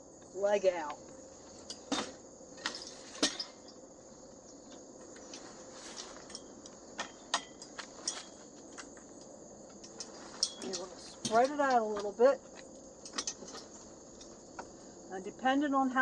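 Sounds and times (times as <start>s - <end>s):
crickets chirring: 0.0s - 16.0s
canopy frame clicks and knocks: 9.7s - 14.7s.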